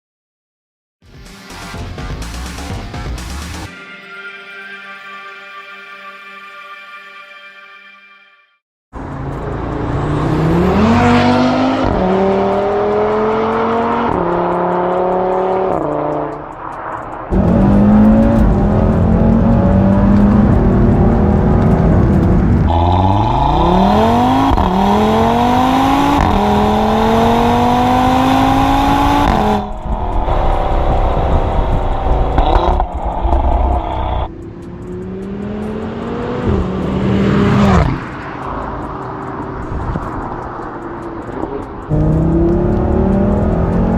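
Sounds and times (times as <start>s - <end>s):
car engine accelerating hard: 9.0s - 43.9s.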